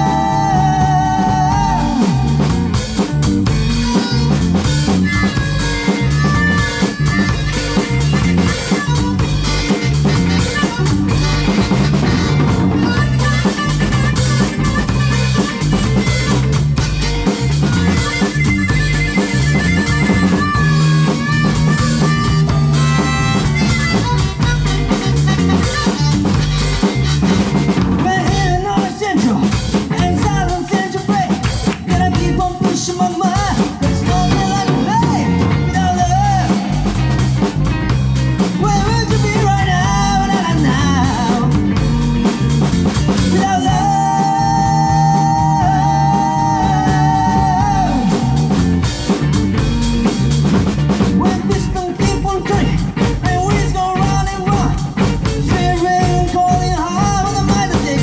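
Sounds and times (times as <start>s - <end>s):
rock band blues-rock groove: 0.0s - 58.0s
wavering lead melody: 1.6s - 27.8s.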